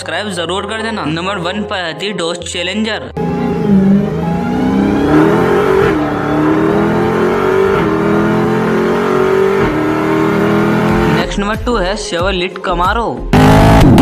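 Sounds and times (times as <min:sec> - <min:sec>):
car engine accelerating through gears: 0:03.2 - 0:11.3, 0:13.4 - 0:14.0.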